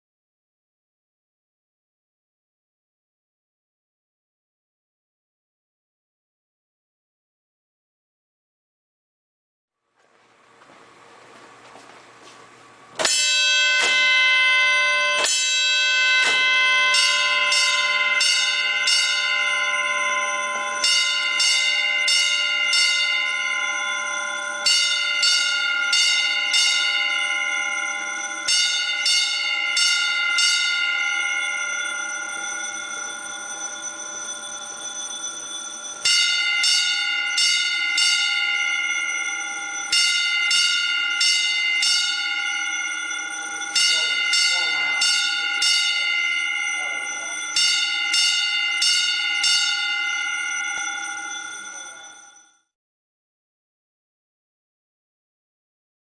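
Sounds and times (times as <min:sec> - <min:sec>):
fire alarm bell ringing: 0:13.0 - 0:52.8.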